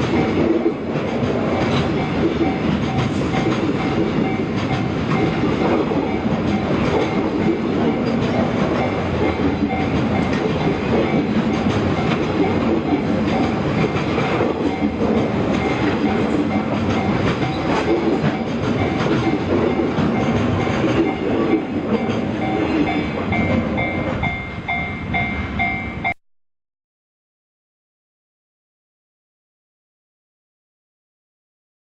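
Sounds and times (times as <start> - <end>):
train wheels clicking over rail joints: 0.0 - 25.6
level crossing bell ringing: 21.8 - 26.2.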